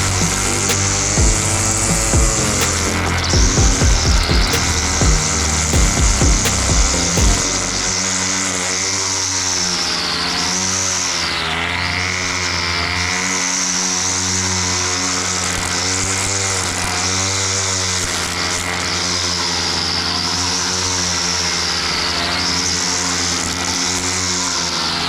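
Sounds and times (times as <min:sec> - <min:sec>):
lawn mower engine cutting grass: 0:00.0 - 0:25.0.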